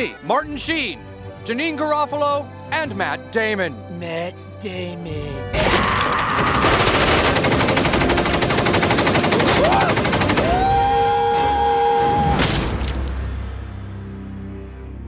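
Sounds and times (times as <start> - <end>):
rapid automatic gunfire: 6.4 - 10.6.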